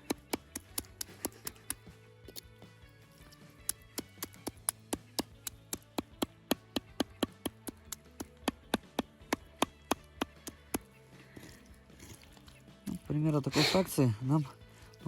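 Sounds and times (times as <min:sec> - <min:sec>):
knife chopping: 0:00.0 - 0:01.8, 0:03.7 - 0:10.9.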